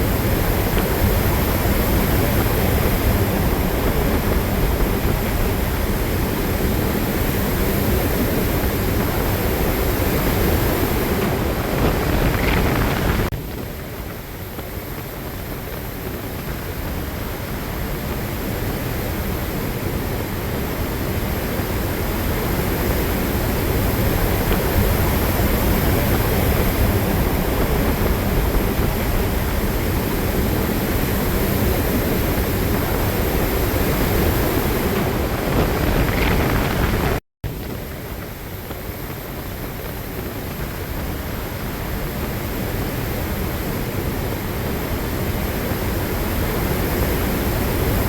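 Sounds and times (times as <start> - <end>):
ocean waves rushing: 0.0 - 13.3, 16.3 - 38.2
strong wind on microphone: 0.0 - 48.0.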